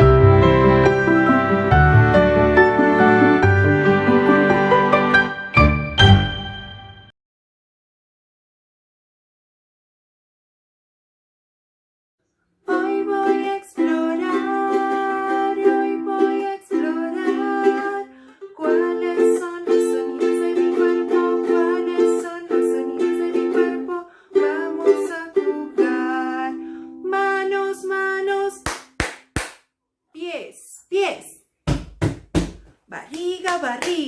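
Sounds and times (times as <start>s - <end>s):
ukulele strumming chords: 0.0s - 6.9s, 12.7s - 27.0s.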